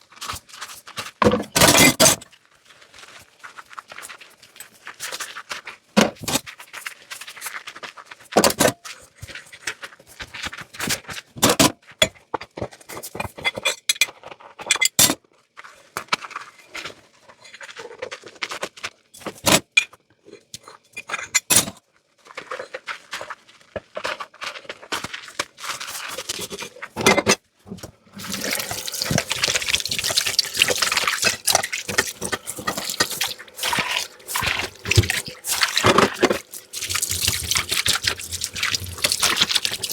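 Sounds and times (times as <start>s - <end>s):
dishes clinking: 28.2s - 39.9s
tap water running into sink: 28.2s - 39.9s.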